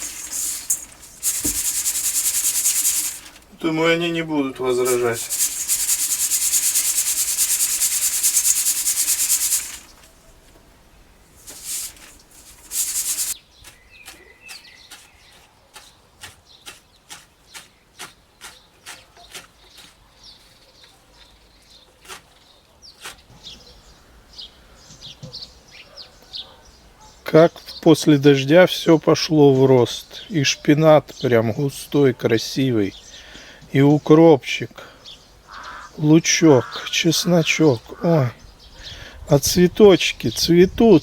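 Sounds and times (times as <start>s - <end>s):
grain pouring hissing stream: 0.0s - 4.0s, 4.6s - 10.2s, 11.2s - 13.4s
small birds chirping: 0.0s - 10.8s, 11.4s - 41.0s.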